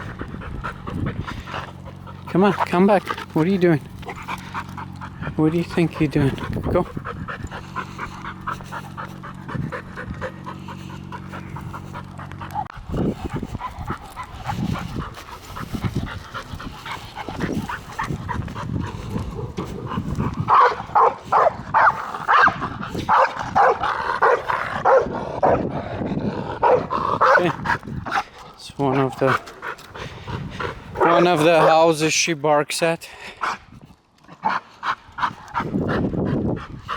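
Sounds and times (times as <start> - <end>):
dog panting: 0.0 - 36.9
dog barking: 20.5 - 25.6, 26.6 - 27.5.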